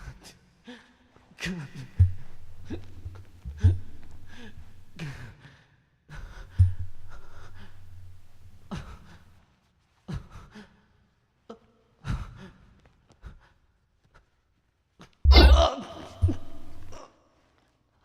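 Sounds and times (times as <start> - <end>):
heavy low booming hits: 15.3 - 17.0
person gasping and sighing: 15.3 - 17.0.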